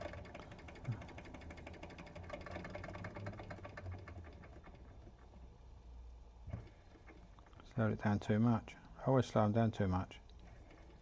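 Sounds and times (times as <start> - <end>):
model steam engine clattering: 0.0 - 5.5.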